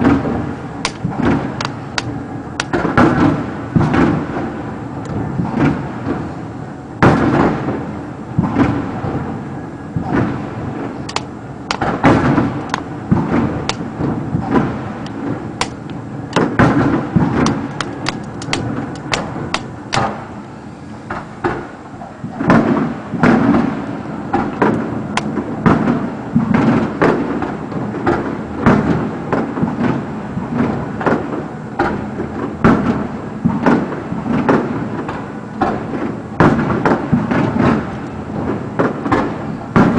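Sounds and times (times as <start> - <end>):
fireworks bangs and booms: 0.0 - 20.4, 21.1 - 39.9
constant rumble: 0.0 - 39.9.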